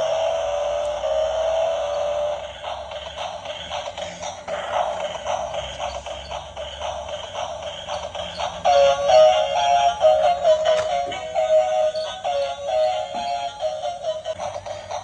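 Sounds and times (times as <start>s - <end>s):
tinny electronic music: 0.0s - 15.0s
synthesized singing melody: 4.5s - 15.0s.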